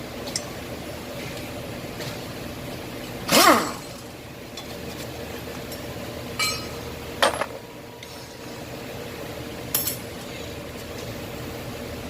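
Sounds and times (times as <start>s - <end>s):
metal tools clinking: 9.7s - 10.1s.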